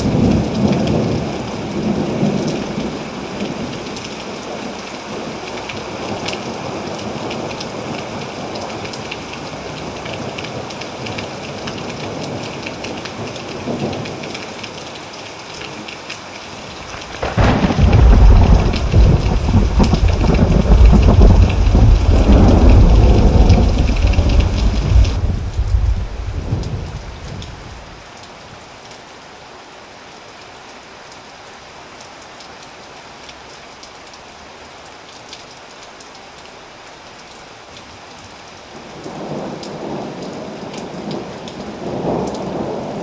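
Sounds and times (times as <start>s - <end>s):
rain pattering: 0.0s - 43.0s
thunder rumbling: 16.7s - 27.9s
loud thunder clap: 16.8s - 27.4s.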